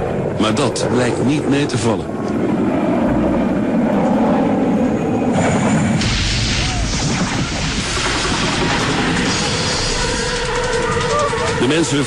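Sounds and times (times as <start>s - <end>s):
helicopter running: 0.0s - 12.0s
helicopter crashing: 5.3s - 12.0s.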